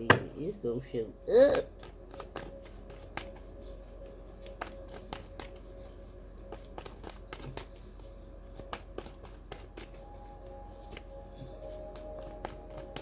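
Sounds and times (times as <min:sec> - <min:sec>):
cards clicking and tapping: 0:01.8 - 0:03.4, 0:04.4 - 0:05.6, 0:06.5 - 0:10.0.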